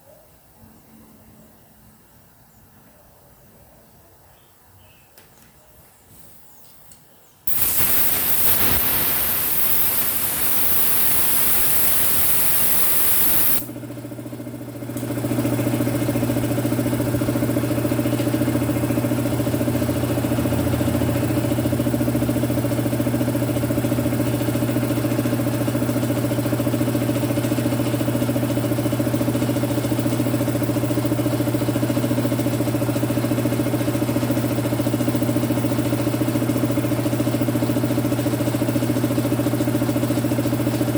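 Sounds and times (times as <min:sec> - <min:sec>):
compressed air hissing: 0:07.5 - 0:13.7
air compressor motor humming: 0:07.5 - 0:40.9.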